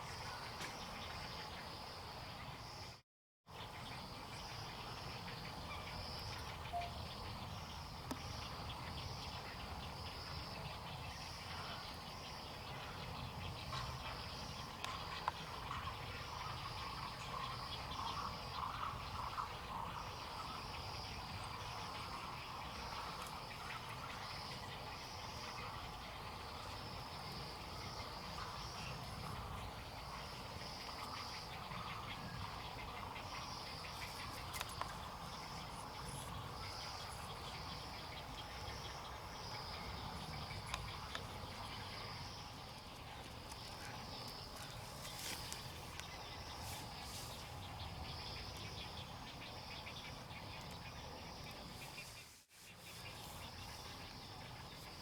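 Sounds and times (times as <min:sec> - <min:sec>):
insect chirring: 0:14.4 - 0:51.8.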